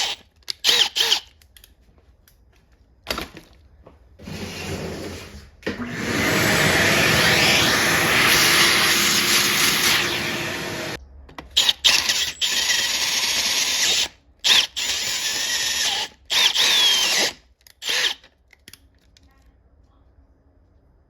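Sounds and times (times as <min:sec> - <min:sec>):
power drill boring: 0:00.0 - 0:01.3, 0:05.8 - 0:11.0, 0:11.6 - 0:18.3.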